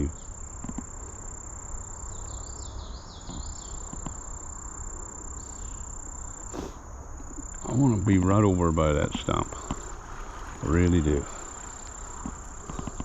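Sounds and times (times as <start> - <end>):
bird chirping: 0.0 - 4.5
insects droning: 0.0 - 13.0.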